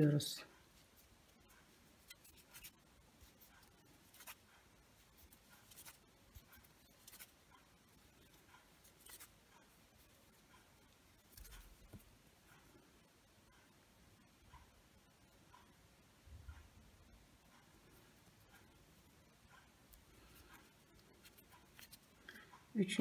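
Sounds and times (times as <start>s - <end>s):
crochet hook scratching yarn: 0.0s - 12.6s, 17.5s - 22.6s.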